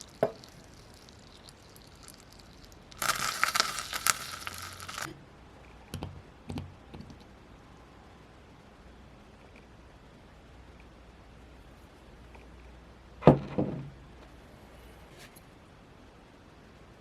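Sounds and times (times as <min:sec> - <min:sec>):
packaging being torn open: 0:03.0 - 0:05.1.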